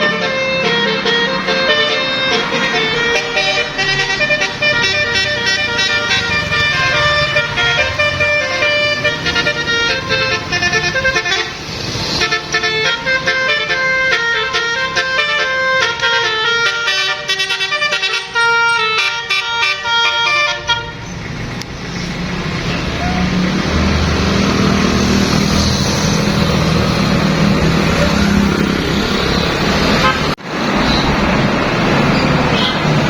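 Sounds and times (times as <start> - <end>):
bus horn playing melody: 0.0 - 21.0, 29.9 - 30.4
engine and road rumble: 0.0 - 33.0.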